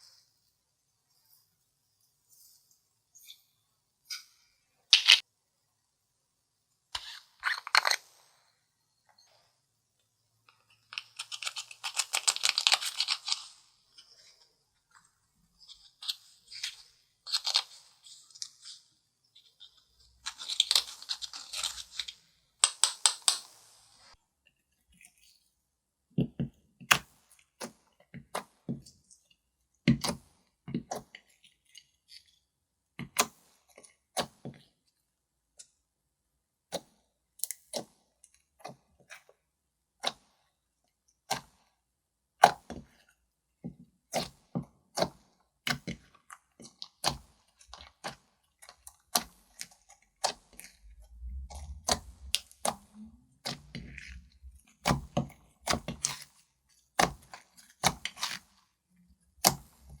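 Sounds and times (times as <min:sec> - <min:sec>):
low rumble: 0:50.9 - 0:53.4.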